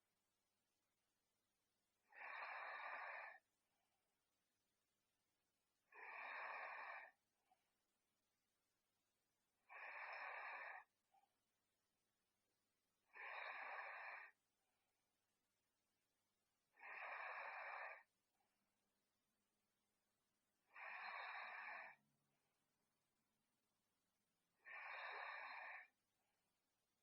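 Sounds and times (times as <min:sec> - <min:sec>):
soft breathy snoring: 0:02.0 - 0:03.5, 0:05.8 - 0:07.2, 0:09.6 - 0:11.0, 0:13.0 - 0:14.4, 0:16.7 - 0:18.2, 0:20.6 - 0:22.1, 0:24.5 - 0:26.0.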